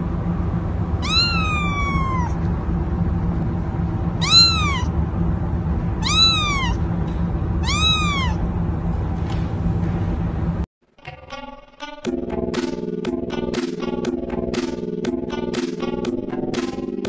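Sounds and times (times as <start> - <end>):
steady low hum: 0.0 - 10.7, 12.1 - 17.0
cat meowing: 1.0 - 2.4, 4.2 - 5.0, 6.0 - 6.8, 7.6 - 8.4.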